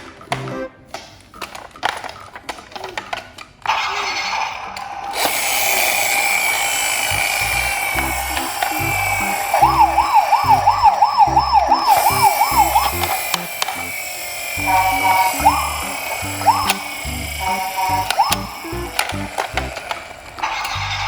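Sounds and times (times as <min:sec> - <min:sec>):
low rhythmic beat: 0:00.0 - 0:00.9, 0:08.0 - 0:14.0, 0:14.6 - 0:19.8
toy vehicle electronic siren: 0:05.2 - 0:21.0.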